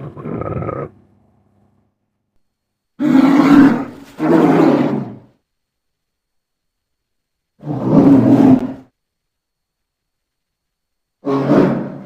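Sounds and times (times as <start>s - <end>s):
polar bear roaring: 0.0s - 1.0s, 3.0s - 5.3s, 11.2s - 12.0s.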